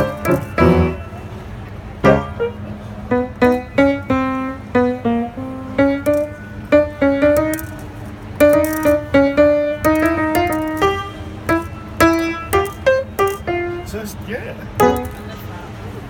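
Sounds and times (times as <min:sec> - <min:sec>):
keyboard playing simple melody: 0:00.0 - 0:15.6.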